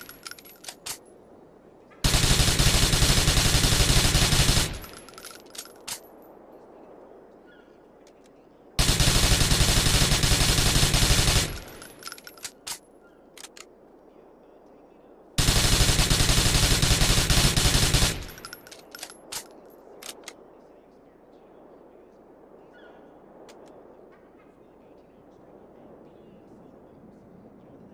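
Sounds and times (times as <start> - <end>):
submachine gun automatic bursts: 0.0 - 1.0, 2.0 - 6.0, 8.8 - 12.8, 15.4 - 19.1
small metallic clinks: 0.0 - 1.1, 4.8 - 6.3, 11.5 - 13.7, 18.2 - 20.3.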